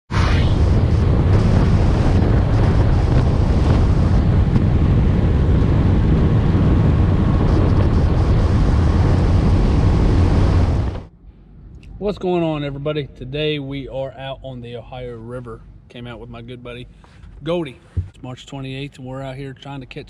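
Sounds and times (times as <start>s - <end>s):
wind buffeting microphone: 0.1s - 11.1s.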